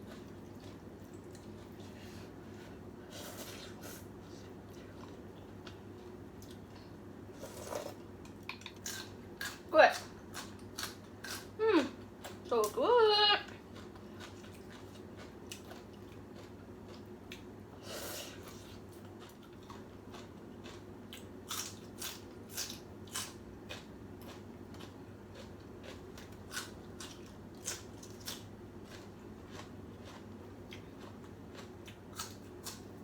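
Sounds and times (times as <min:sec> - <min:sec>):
person chewing: 0:00.0 - 0:09.6, 0:10.2 - 0:11.6, 0:13.5 - 0:17.6, 0:18.3 - 0:33.0
noisy slurp: 0:07.4 - 0:08.0.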